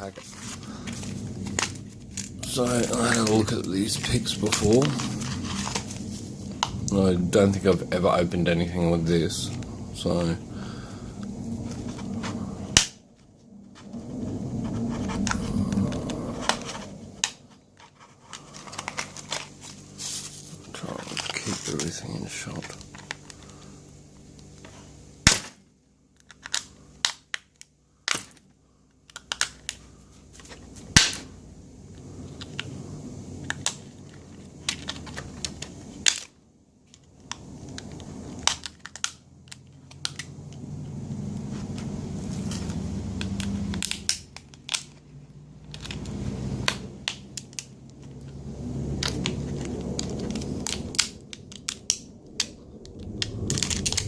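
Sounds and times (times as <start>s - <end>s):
plastic packaging crackling: 0.0s - 8.4s, 11.3s - 23.7s, 33.4s - 40.4s, 41.6s - 54.0s
rubbing and handling noise: 0.0s - 25.1s, 29.2s - 54.0s
sharp plastic snaps: 26.2s - 29.8s, 34.6s - 40.6s, 42.5s - 45.0s, 45.6s - 48.0s, 49.0s - 54.0s.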